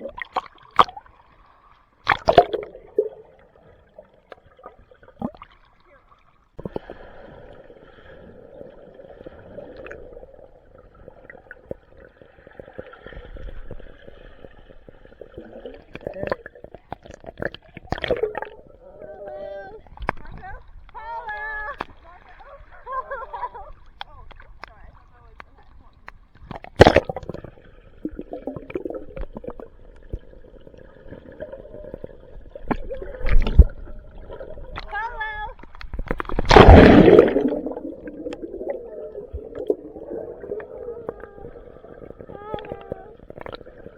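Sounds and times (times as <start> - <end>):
pool water sloshing and splashing: 0.0 - 43.9.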